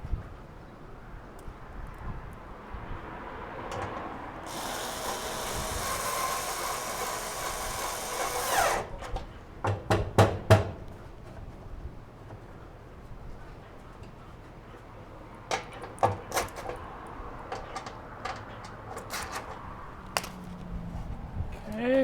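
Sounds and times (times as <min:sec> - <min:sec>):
cordless drill driving screw: 0:04.4 - 0:09.2
sharp knocks: 0:09.6 - 0:10.8.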